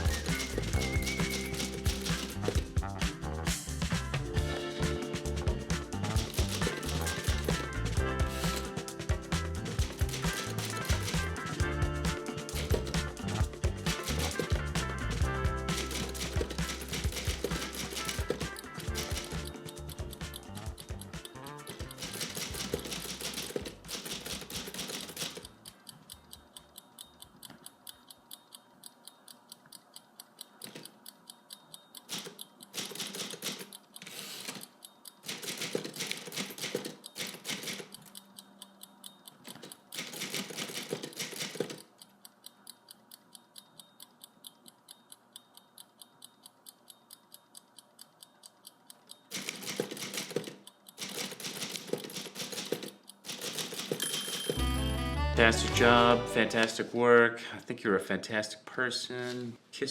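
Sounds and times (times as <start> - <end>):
typewriter key strikes: 6.1 - 7.8, 9.8 - 11.4, 15.7 - 25.5, 32.1 - 33.7, 35.3 - 37.9, 39.5 - 41.9, 49.3 - 54.6.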